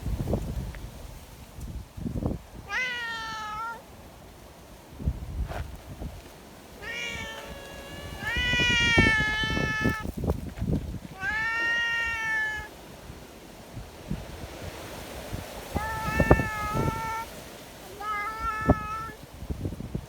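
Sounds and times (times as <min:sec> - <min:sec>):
cat meowing: 0:02.7 - 0:03.8, 0:06.8 - 0:10.1, 0:11.2 - 0:12.7, 0:15.7 - 0:19.2.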